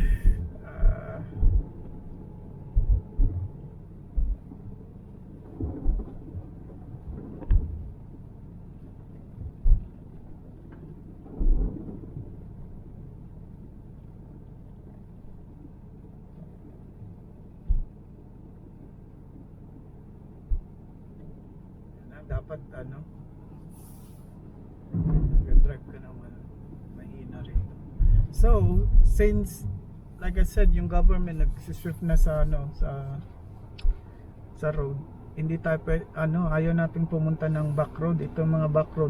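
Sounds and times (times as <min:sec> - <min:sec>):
loud low thumps: 0:00.0 - 0:04.7, 0:05.6 - 0:08.0, 0:09.4 - 0:09.9, 0:24.9 - 0:25.9, 0:27.4 - 0:33.0
low rumble in a car cabin: 0:00.0 - 0:39.0.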